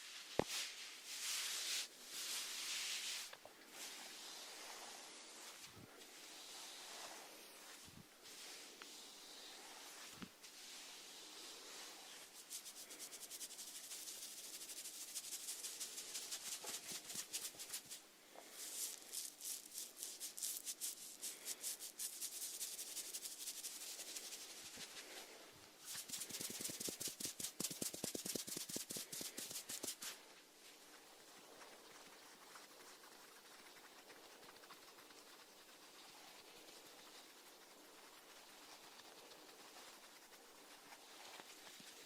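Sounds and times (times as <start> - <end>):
snails rasping at food: 16.8 - 23.3.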